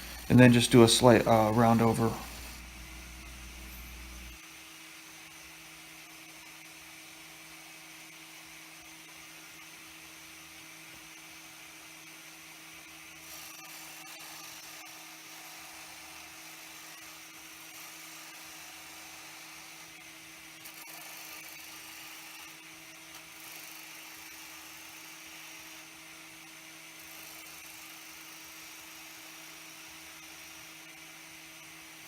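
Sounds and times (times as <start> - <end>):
lathe motor hum: 0.0 - 4.4
turning tool cutting wood: 0.0 - 4.4, 13.2 - 32.0.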